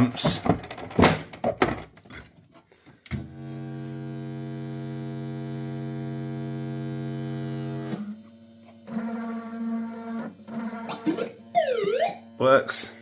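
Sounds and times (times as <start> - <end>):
machine buzzing hum: 3.1 - 13.0.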